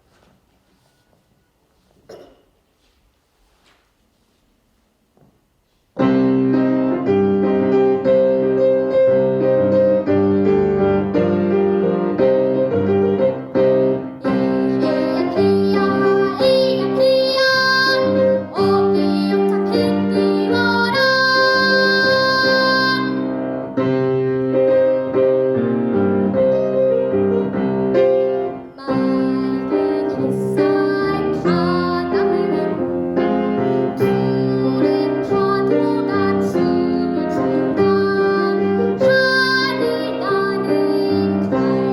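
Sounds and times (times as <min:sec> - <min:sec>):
piano accompaniment: 0:05.9 - 0:41.9
girl singing: 0:14.2 - 0:23.5, 0:28.7 - 0:41.9.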